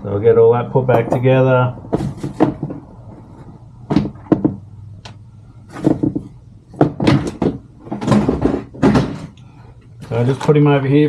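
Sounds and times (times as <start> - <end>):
plastic and metal parts clattering: 1.9 - 4.6, 5.6 - 9.4, 10.0 - 11.0.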